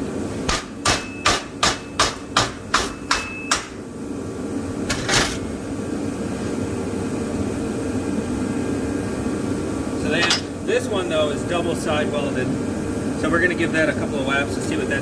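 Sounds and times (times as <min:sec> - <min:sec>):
hammer striking metal: 0:00.5 - 0:03.8.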